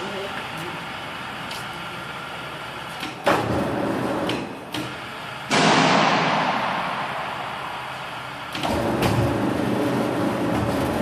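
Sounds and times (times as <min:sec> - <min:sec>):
rattling crash: 0:05.5 - 0:09.2.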